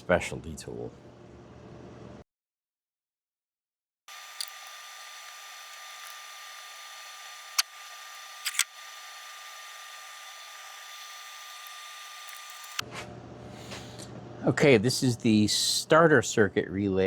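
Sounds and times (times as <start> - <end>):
sharp small clicks: 4.1 - 12.8.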